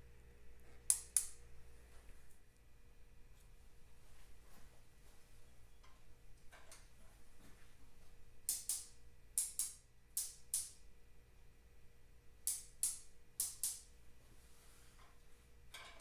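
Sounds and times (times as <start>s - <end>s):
sharp clicks with hissy tails: 0.9s - 1.4s, 8.5s - 10.8s, 12.4s - 13.9s.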